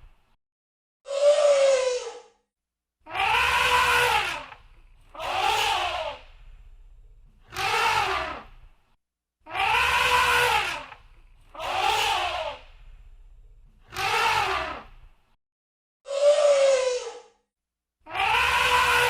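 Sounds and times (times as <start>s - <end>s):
elephant trumpeting: 3.1s - 6.2s, 7.5s - 8.5s, 9.5s - 12.6s, 13.9s - 14.9s, 18.1s - 19.0s.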